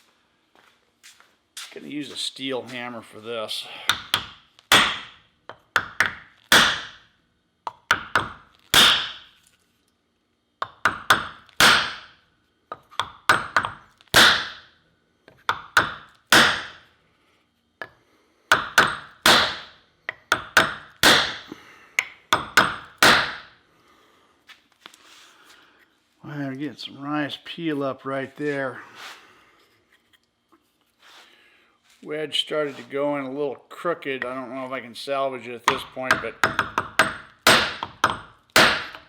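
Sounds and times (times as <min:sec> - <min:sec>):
hammer striking wooden wedge: 0:03.9 - 0:07.0, 0:07.7 - 0:09.3, 0:10.6 - 0:14.7, 0:15.3 - 0:16.8, 0:17.8 - 0:23.5, 0:35.6 - 0:39.0.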